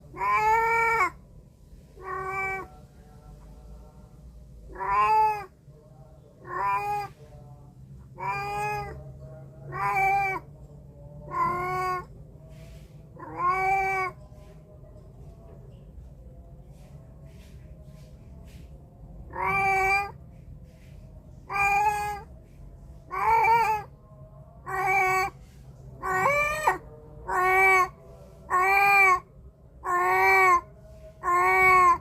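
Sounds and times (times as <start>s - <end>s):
cat meowing: 0.1s - 1.2s, 2.0s - 2.8s, 4.7s - 5.5s, 6.4s - 7.2s, 8.2s - 9.0s, 9.7s - 10.5s, 11.3s - 12.1s, 13.2s - 14.2s, 19.3s - 20.2s, 21.5s - 22.3s, 23.1s - 23.9s, 24.6s - 25.4s, 26.0s - 27.9s, 28.5s - 29.2s, 29.8s - 30.6s, 31.2s - 32.0s.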